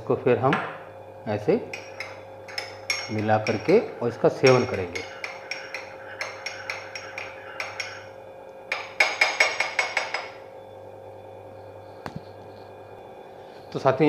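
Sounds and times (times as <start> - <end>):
spoon clinking in a cup: 1.7 - 3.8, 4.4 - 8.1, 8.7 - 10.4.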